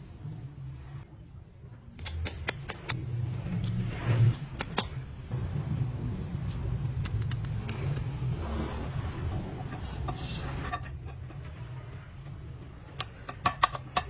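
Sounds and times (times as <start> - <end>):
steady low hum: 0.0 - 14.0
tools clicking and clinking: 2.0 - 3.0, 12.9 - 14.0.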